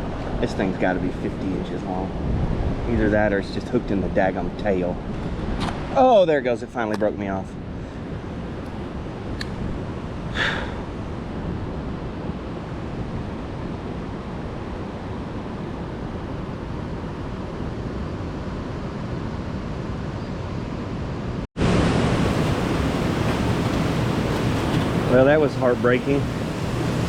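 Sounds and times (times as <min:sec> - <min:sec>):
wind rushing: 0:00.0 - 0:06.0, 0:07.5 - 0:19.9
moving water: 0:21.6 - 0:27.0.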